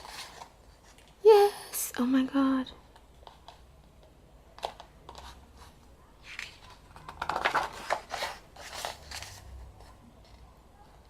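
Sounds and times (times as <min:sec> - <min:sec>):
photo book pages rustling: 0:00.0 - 0:01.2, 0:04.6 - 0:10.5.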